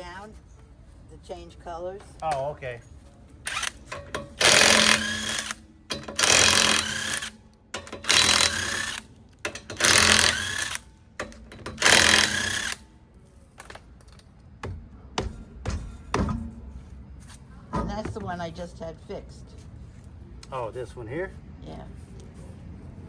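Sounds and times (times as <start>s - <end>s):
impact wrench whining: 3.5s - 12.8s.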